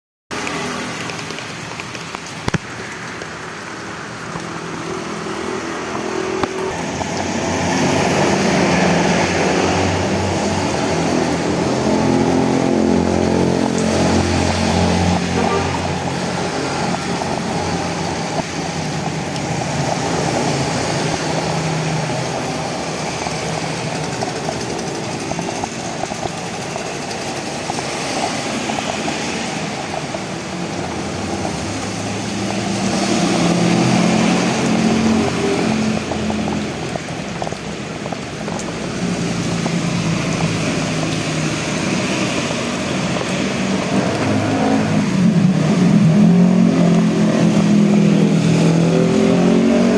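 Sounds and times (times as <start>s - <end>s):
rain hiss: 0.3s - 49.9s
vehicles passing on road: 0.3s - 49.9s.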